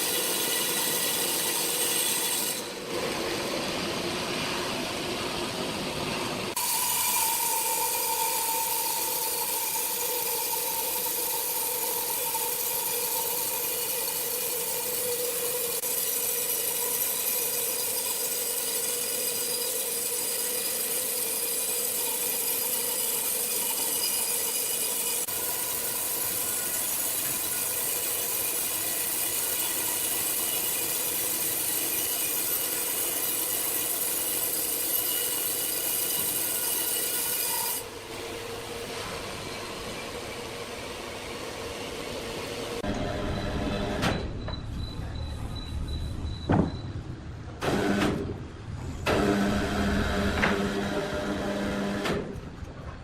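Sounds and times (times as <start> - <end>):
saw cutting through wood: 0.0 - 5.6, 6.5 - 42.9.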